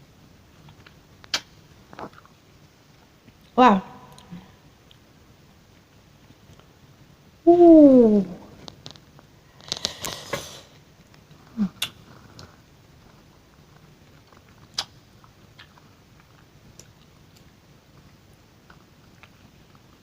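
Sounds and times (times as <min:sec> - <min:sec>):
lip and tongue clicks: 0:00.6 - 0:02.3, 0:14.1 - 0:17.5
person humming: 0:07.5 - 0:08.5.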